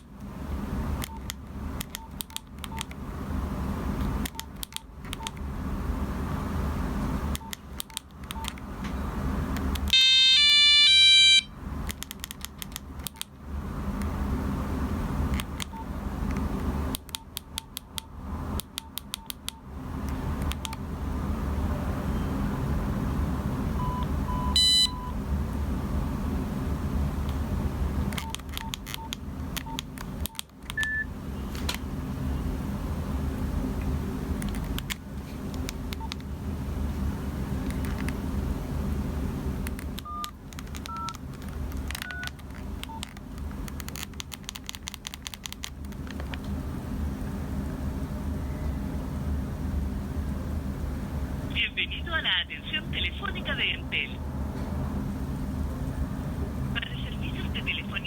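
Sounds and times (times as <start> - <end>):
low steady hum: 0.0 - 58.0
repeated clicking: 1.0 - 3.0, 4.0 - 5.5, 7.3 - 8.7, 11.8 - 13.4, 15.3 - 20.8, 28.1 - 30.9, 34.4 - 36.3, 39.6 - 46.5
mobile phone electronic beeps: 10.0 - 11.5, 23.8 - 25.2, 28.2 - 31.1, 40.0 - 40.3, 40.9 - 41.2, 42.0 - 43.1.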